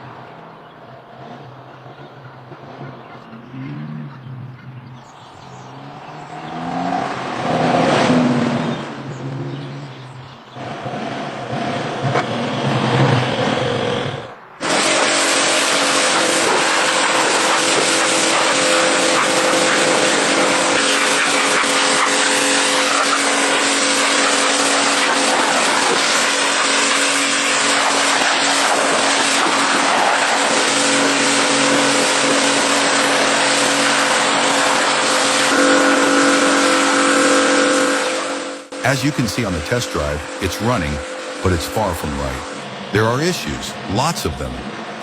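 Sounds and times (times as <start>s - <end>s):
road and wind noise: 0.0s - 14.6s.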